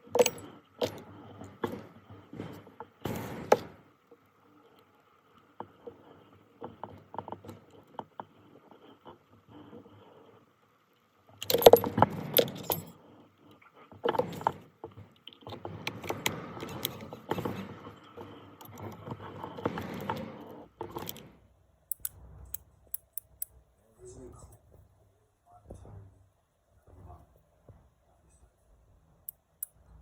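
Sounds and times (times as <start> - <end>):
metal parts and tools clinking: 0.1 - 1.0, 11.4 - 13.0.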